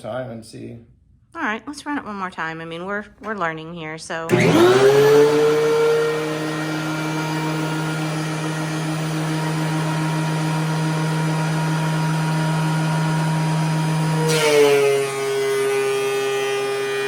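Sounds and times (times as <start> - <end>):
thickness planer running: 4.3 - 17.0.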